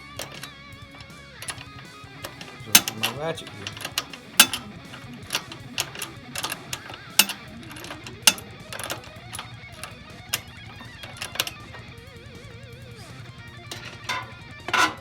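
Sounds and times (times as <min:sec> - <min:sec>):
guitar music: 0:00.0 - 0:15.0
hand ratchet clicking: 0:00.0 - 0:15.0.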